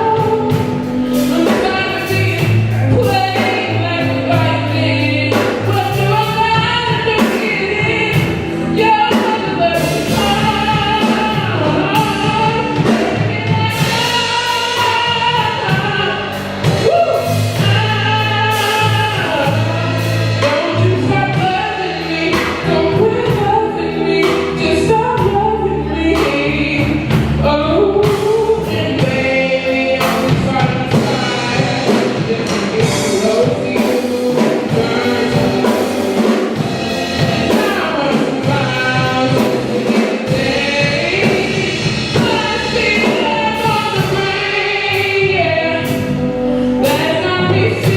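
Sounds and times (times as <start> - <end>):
live band playing: 0.0 - 47.9
people singing: 0.0 - 47.9.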